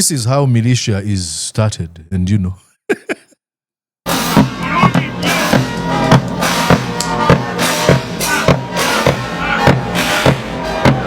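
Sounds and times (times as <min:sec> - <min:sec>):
music with drum-kit beat: 0:04.1 - 0:11.0.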